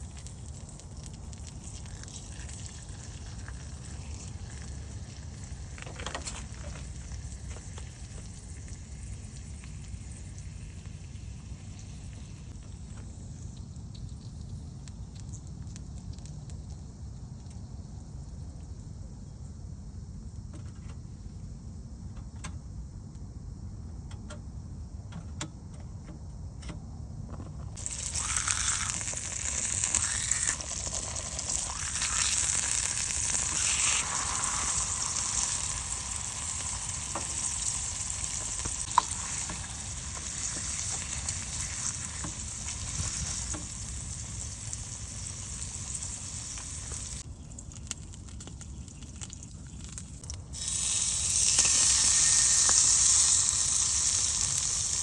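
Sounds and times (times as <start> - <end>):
food sizzling in a pan: 0.0 - 5.8, 27.8 - 47.2, 50.6 - 55.0.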